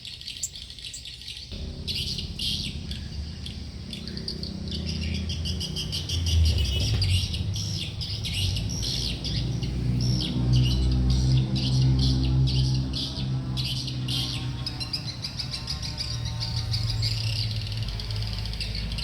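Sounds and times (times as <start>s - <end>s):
bird chirping and trilling: 0.0s - 19.0s
steady low hum: 1.5s - 15.2s.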